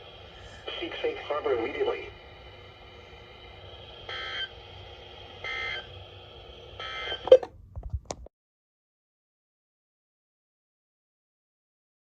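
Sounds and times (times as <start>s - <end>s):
faint steady hum: 0.0s - 8.3s
bursts of data tones: 4.1s - 4.6s, 5.4s - 6.0s, 6.8s - 7.5s.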